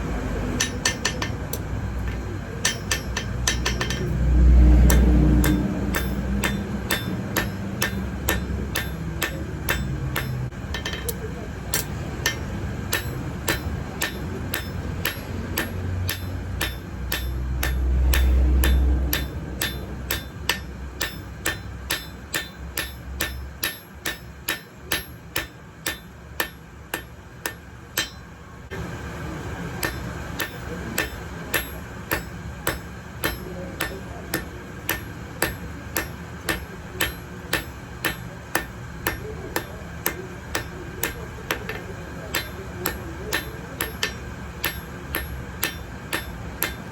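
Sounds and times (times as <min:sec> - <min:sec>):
hammer striking metal on anvil: 0:00.5 - 0:28.8, 0:29.7 - 0:46.9
loud low rumble: 0:03.0 - 0:10.6.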